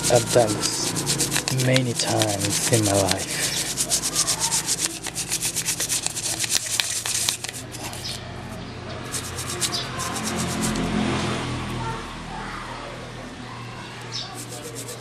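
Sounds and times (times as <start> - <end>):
scrubbing circuit board: 0.0 - 8.2, 9.1 - 10.8, 14.4 - 15.0.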